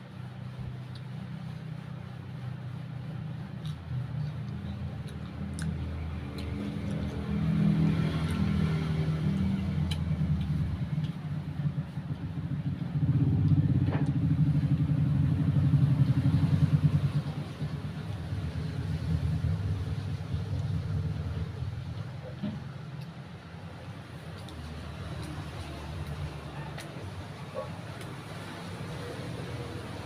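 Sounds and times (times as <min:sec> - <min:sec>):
motor engine running: 0:01.4 - 0:30.0
crunching chewing: 0:03.4 - 0:11.4, 0:20.4 - 0:29.7.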